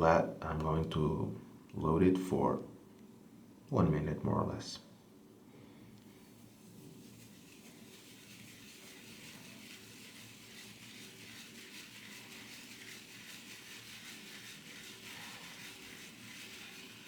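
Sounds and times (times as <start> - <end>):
shaving brush scratching on soap: 6.3 - 17.0.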